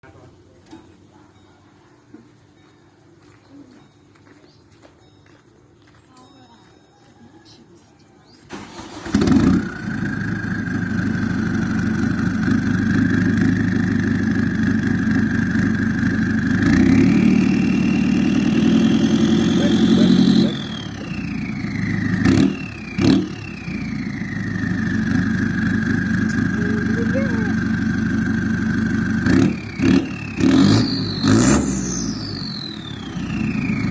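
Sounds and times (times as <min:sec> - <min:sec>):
diesel engine idling and revving: 0:08.2 - 0:33.9
turbo whistle: 0:29.8 - 0:33.1.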